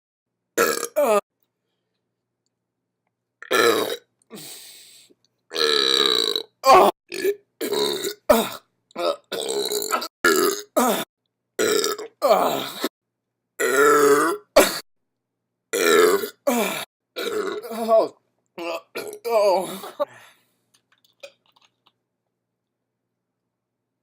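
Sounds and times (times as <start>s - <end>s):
person burping: 0.6s - 1.2s, 3.4s - 4.0s, 5.5s - 12.9s, 13.6s - 14.8s, 15.7s - 20.1s.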